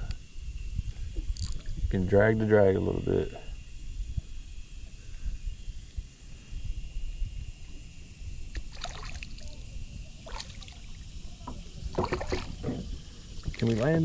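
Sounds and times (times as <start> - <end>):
fish splashing at surface: 8.6 - 9.5, 10.2 - 11.0, 11.9 - 12.6.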